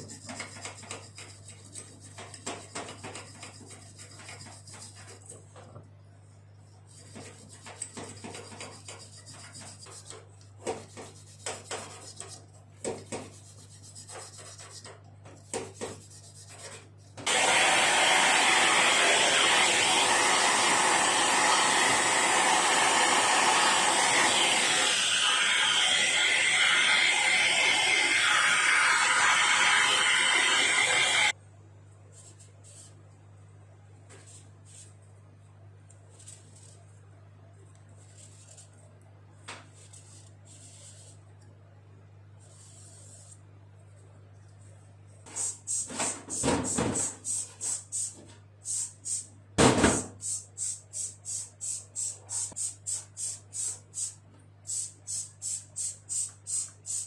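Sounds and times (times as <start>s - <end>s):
air blower blowing: 17.2s - 31.3s.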